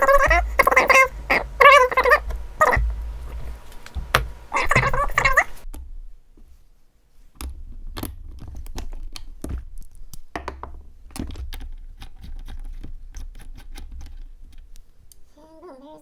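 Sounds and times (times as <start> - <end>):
low steady hum: 0.0 - 5.6.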